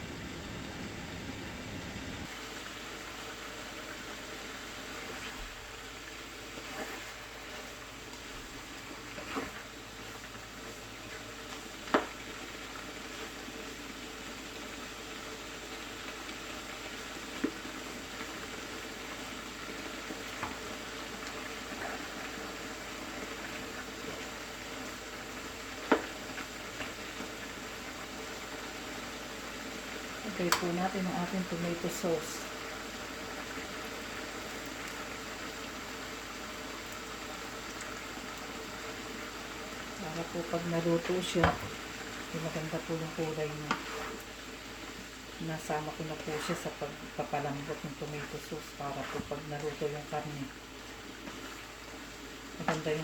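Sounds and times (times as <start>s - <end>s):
meat sizzling in a pan: 2.3s - 53.0s.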